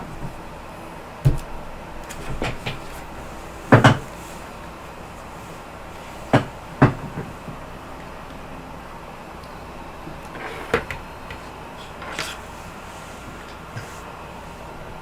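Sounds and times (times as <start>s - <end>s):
objects knocking and thudding: 1.2s - 3.0s, 3.7s - 4.1s, 6.3s - 7.4s.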